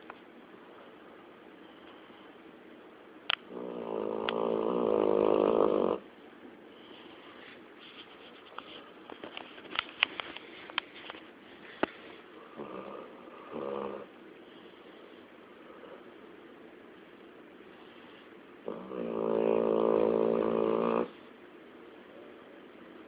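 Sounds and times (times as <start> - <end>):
snoring: 3.5 - 6.0, 12.6 - 14.1, 18.6 - 21.2.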